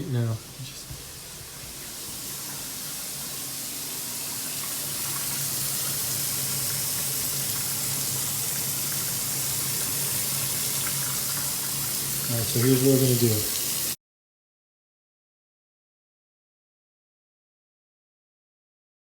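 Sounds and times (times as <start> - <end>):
tap water running into sink: 0.0 - 14.0.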